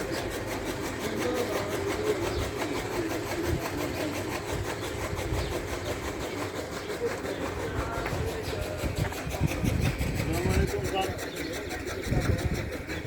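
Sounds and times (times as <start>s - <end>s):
machine engine droning: 0.0s - 13.0s.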